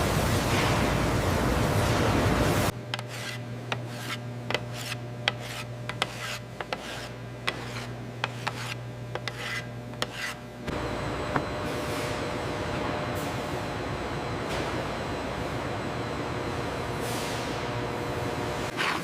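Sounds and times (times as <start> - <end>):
low machine hum: 0.0 - 18.8
short scraping strokes: 3.0 - 10.4.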